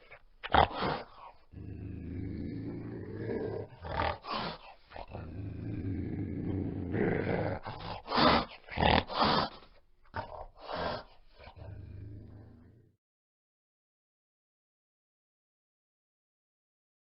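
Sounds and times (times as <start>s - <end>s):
animal snarling: 0.0s - 12.9s
animal growling low: 0.5s - 8.2s, 10.1s - 13.0s.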